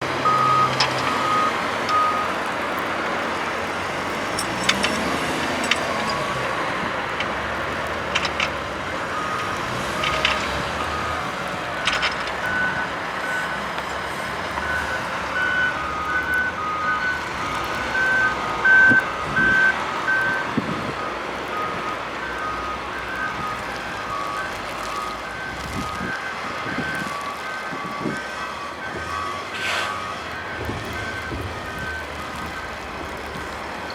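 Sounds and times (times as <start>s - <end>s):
heavy diesel machinery running: 0.0s - 33.9s
reverse alarms beeping: 0.2s - 3.3s, 7.2s - 33.9s
sharp knocks and clanks: 4.2s - 12.9s.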